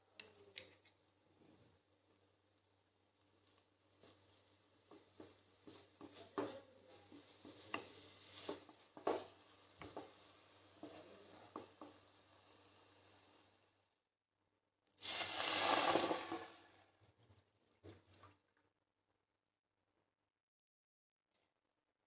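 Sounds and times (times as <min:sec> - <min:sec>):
faint sizzle: 0:00.0 - 0:14.1, 0:15.0 - 0:18.2
utensil scraping cooking pan: 0:04.0 - 0:13.7.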